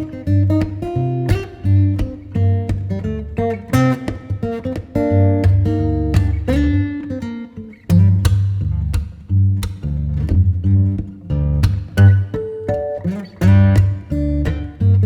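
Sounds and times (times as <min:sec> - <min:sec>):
acoustic guitar plucked and strummed: 0:00.0 - 0:15.0
steady bass line: 0:05.0 - 0:06.9, 0:07.9 - 0:12.4, 0:13.4 - 0:15.0.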